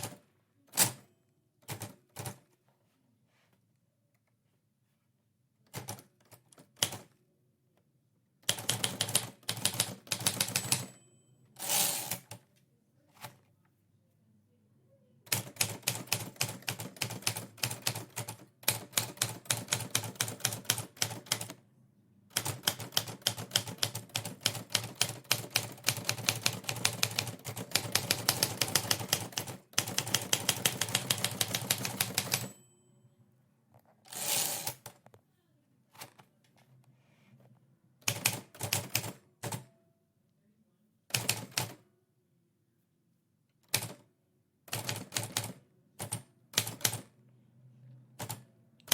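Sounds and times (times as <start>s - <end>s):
typewriter keystrokes: 44.7s - 47.1s.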